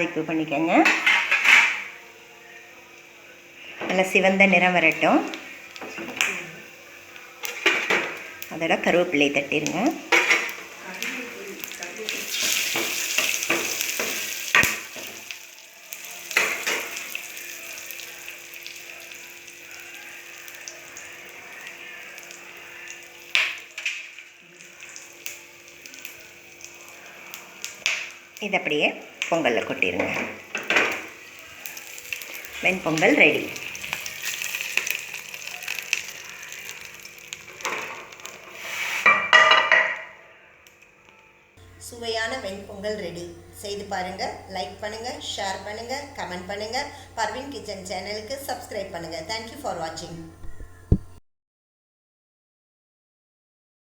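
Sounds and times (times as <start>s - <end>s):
spices sizzling in hot oil: 2.8s - 39.5s
ladle scraping in a pot: 37.7s - 39.3s.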